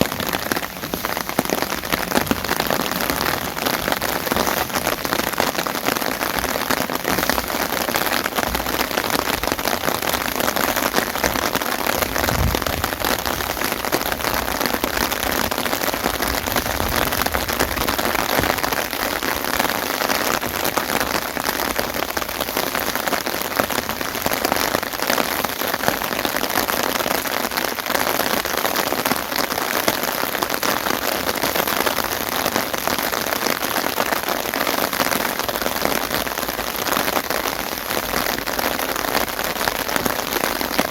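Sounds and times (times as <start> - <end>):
low thumps: 0.0 - 9.4
heavy rain falling: 0.0 - 40.9.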